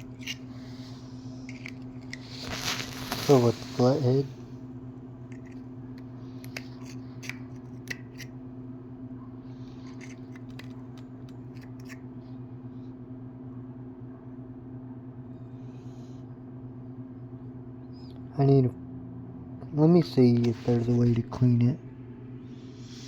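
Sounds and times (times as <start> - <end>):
screwdriver clicking and scraping metal: 0.0 - 0.4, 6.4 - 8.3, 9.9 - 10.8
low hum: 0.0 - 23.0.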